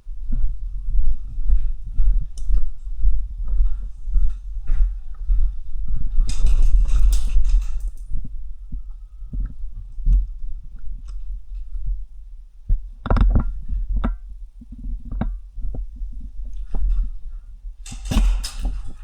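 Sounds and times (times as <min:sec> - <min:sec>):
footsteps with dull thumps: 0:00.0 - 0:07.2, 0:08.1 - 0:12.0.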